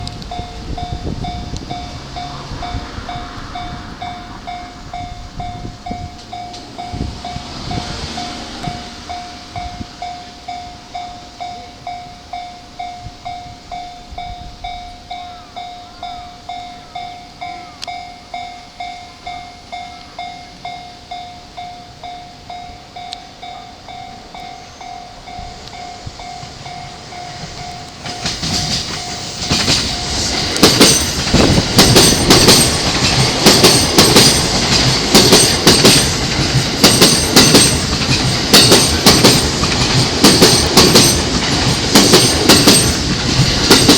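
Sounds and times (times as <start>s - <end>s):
train wheels clattering: 0.0s - 11.6s, 22.9s - 43.9s
electric train passing: 0.0s - 43.9s
level crossing bell ringing: 0.0s - 43.9s.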